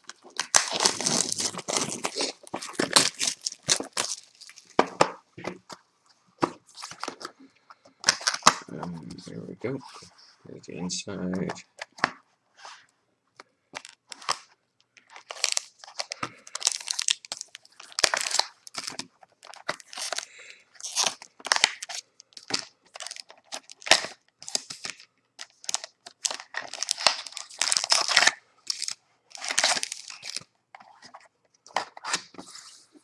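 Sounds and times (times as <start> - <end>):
card packs crinkling: 0.0 - 5.5, 8.0 - 9.3, 13.7 - 32.9.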